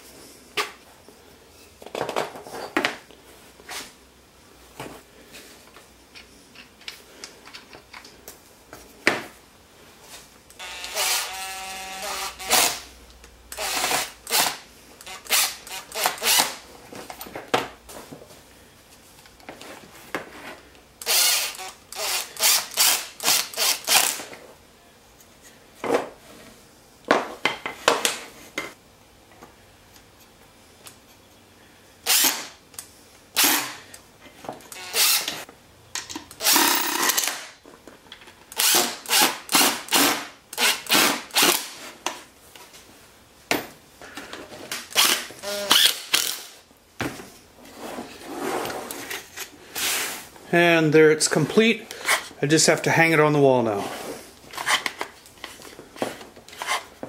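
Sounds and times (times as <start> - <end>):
power drill short bursts: 10.6 - 12.9, 13.6 - 16.6, 21.0 - 24.2, 32.1 - 32.6, 34.7 - 35.4, 38.6 - 41.7, 44.9 - 46.5.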